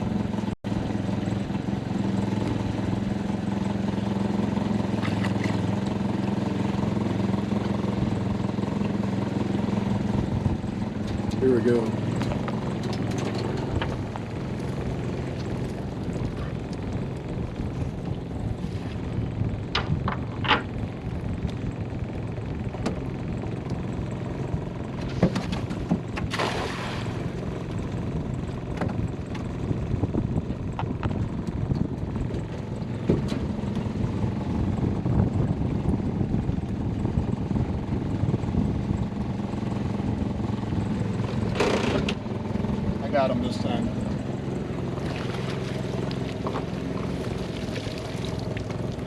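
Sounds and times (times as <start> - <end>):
boat motor running: 0.0 - 49.0
wind on microphone: 10.0 - 11.3, 12.2 - 22.7, 24.5 - 43.0.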